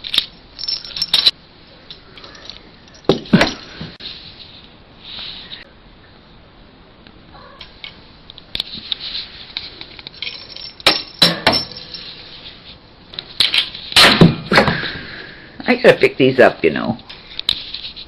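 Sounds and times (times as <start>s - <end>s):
small hard objects clinking: 0.0s - 1.4s.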